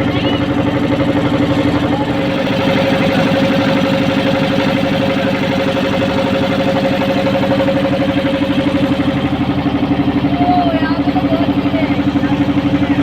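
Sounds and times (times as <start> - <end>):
motorboat engine running: 0.0 - 13.0.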